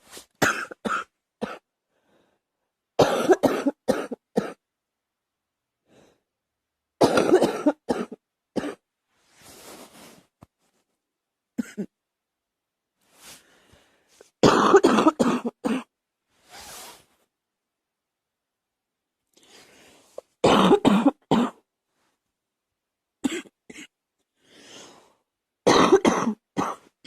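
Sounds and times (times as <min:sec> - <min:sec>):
girl coughing: 0:00.4 - 0:01.6, 0:03.0 - 0:04.6, 0:07.0 - 0:08.8, 0:11.6 - 0:11.9, 0:14.4 - 0:15.9, 0:20.4 - 0:21.6, 0:23.2 - 0:24.0, 0:25.7 - 0:26.9.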